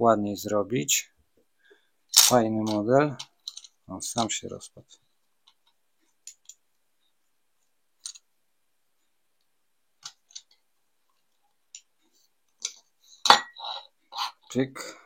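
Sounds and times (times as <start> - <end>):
toy car parts clicking: 2.2 - 3.7.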